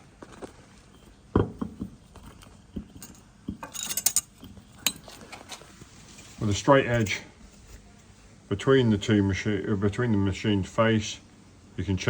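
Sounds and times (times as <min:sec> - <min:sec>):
tools knocking and clinking on metal: 0:00.9 - 0:05.6
jangling rattle: 0:03.0 - 0:05.2.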